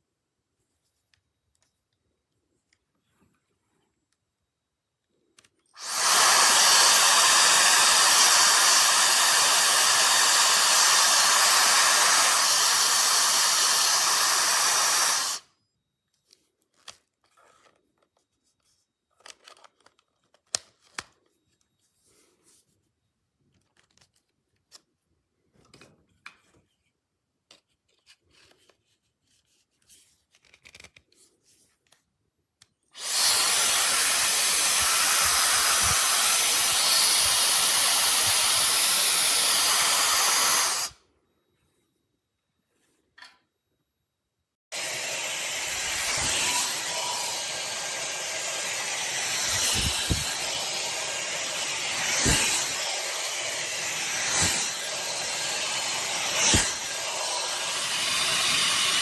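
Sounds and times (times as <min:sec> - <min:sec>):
hair dryer brush blowing: 0:05.8 - 0:15.4, 0:33.0 - 0:41.0, 0:44.7 - 0:59.0
small clicks and handling knocks: 0:19.1 - 0:21.7, 0:30.3 - 0:31.2.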